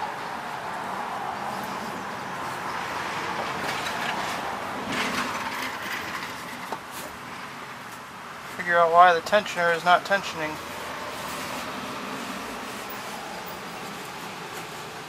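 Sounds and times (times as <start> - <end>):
steady background noise: 0.0 - 15.0
grass scraping and rustling: 1.6 - 7.2, 9.6 - 15.0.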